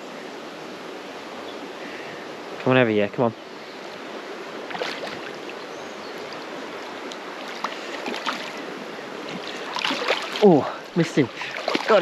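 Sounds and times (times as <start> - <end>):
creek water running: 0.0 - 12.0
small splashes: 4.6 - 5.6, 6.2 - 12.0.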